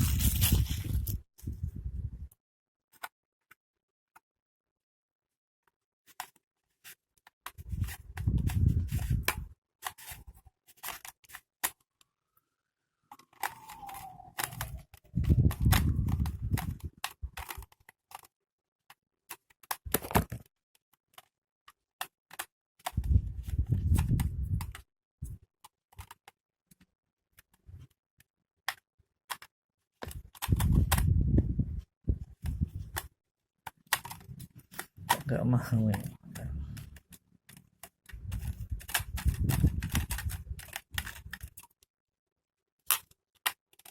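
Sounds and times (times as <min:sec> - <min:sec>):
handling noise: 0:00.0 - 0:01.6.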